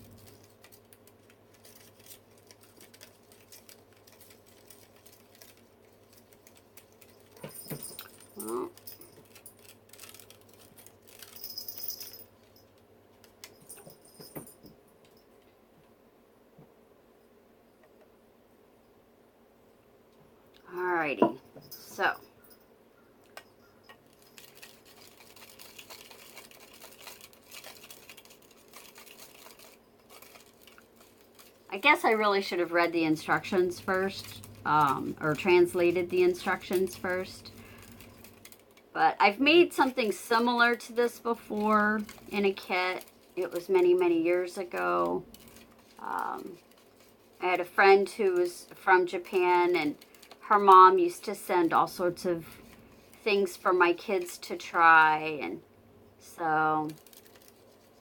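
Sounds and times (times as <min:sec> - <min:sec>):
steady low hum: 0:31.7 - 0:46.8.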